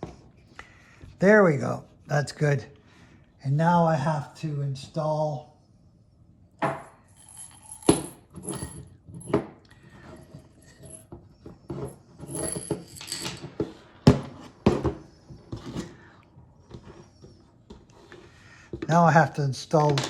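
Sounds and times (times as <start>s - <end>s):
small parts clicking and rattling: 7.2s - 9.4s, 12.2s - 13.5s.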